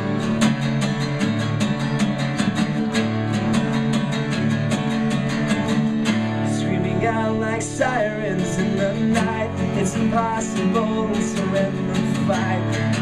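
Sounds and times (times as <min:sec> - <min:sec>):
acoustic guitar strumming: 0:00.0 - 0:13.0
person singing: 0:06.3 - 0:13.0.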